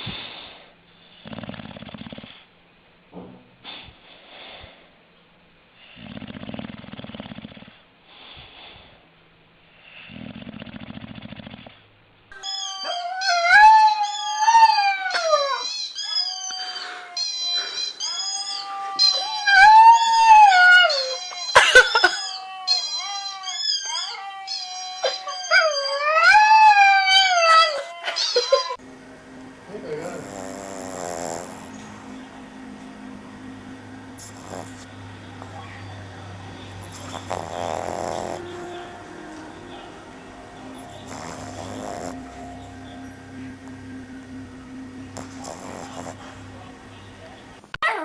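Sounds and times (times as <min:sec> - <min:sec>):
dog snoring: 0:01.2 - 0:02.5, 0:05.8 - 0:07.8, 0:09.9 - 0:27.8, 0:28.8 - 0:47.7
dog howling: 0:12.3 - 0:48.0.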